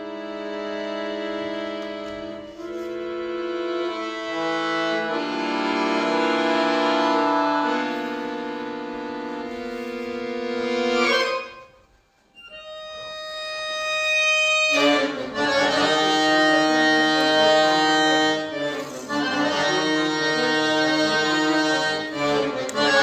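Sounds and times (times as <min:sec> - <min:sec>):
solo accordion playing: 0:00.0 - 0:23.0.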